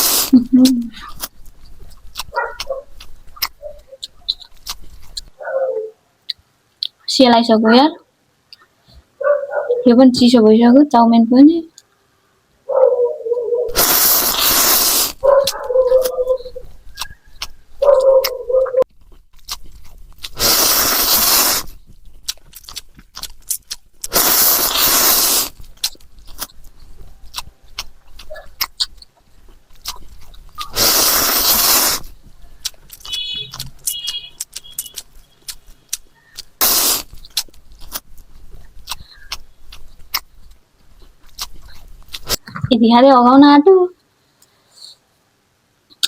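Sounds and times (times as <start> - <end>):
chewing clicks and smacks: 1.0 - 5.3, 15.2 - 20.4, 21.8 - 24.2, 25.6 - 30.8, 32.2 - 42.6
noodles slurped: 13.7 - 17.6, 19.5 - 28.9, 29.6 - 35.6, 36.2 - 40.3.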